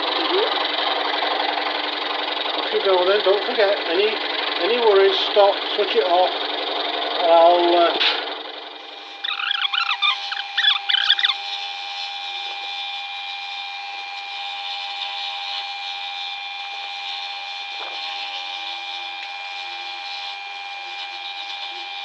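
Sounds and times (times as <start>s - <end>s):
scroll saw cutting wood: 8.8s - 12.9s, 14.1s - 22.0s
irregular squeaks: 9.1s - 12.1s.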